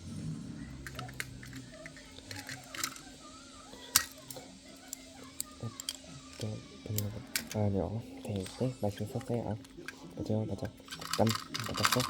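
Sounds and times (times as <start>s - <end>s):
faint low hum: 0.0s - 12.0s
small hard objects clicking: 10.8s - 12.0s.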